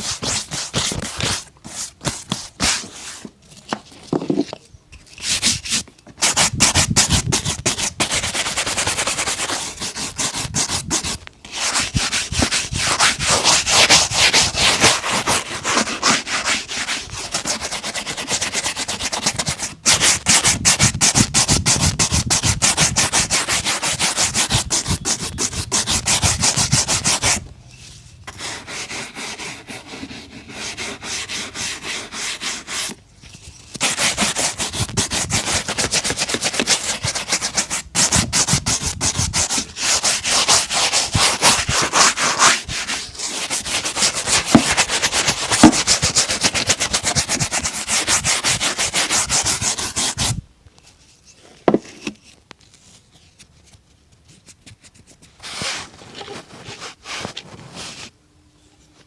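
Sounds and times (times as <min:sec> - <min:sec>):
shoe brush scrubbing boot: 0:06.2 - 0:27.3, 0:33.8 - 0:50.3
faint handling sounds: 0:50.6 - 0:59.0.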